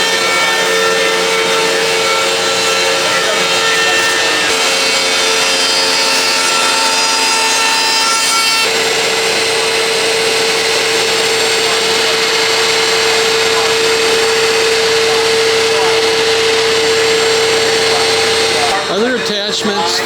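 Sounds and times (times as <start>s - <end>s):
steady motor hum: 0.0s - 20.0s
cutting head whine: 8.6s - 20.0s.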